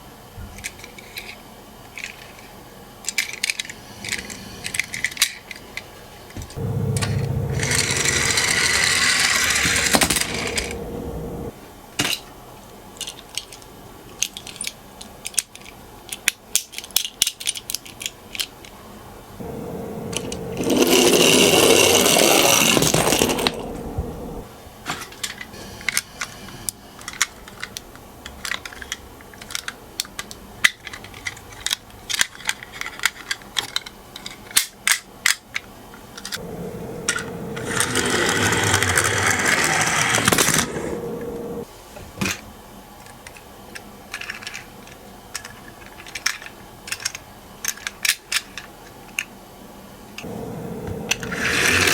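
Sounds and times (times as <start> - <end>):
toy cars clattering on plastic: 0.5 - 6.6, 13.0 - 18.8, 24.8 - 26.4, 27.0 - 36.4, 43.0 - 49.3
toy mechanism whirring: 0.9 - 5.6, 7.0 - 10.8, 20.1 - 23.6, 25.2 - 35.4, 37.1 - 41.0, 51.1 - 51.9.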